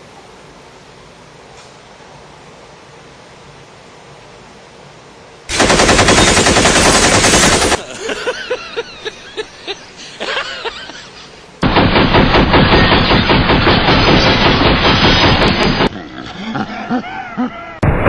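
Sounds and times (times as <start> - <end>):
automatic gunfire: 5.5 - 7.9, 11.6 - 15.9
sharp ringing gunshot reports: 11.6 - 15.9.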